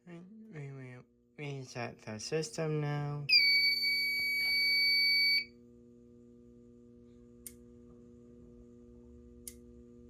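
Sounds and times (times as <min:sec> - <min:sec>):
faint steady hum: 0:00.0 - 0:10.0
high-pitched fire alarm tone: 0:03.3 - 0:05.5.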